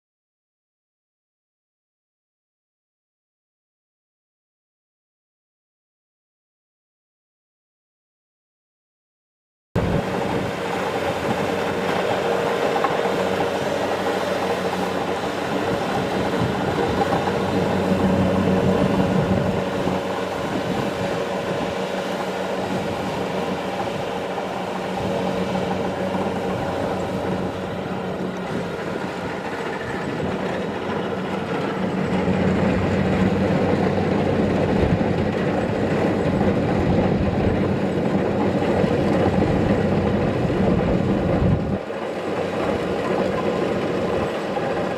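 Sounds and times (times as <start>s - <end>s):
combine harvester running: 9.8s - 44.9s.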